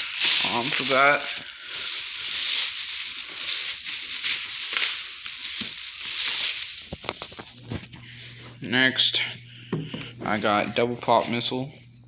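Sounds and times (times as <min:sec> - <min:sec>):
packaging rustling and crinkling: 0:00.0 - 0:08.6.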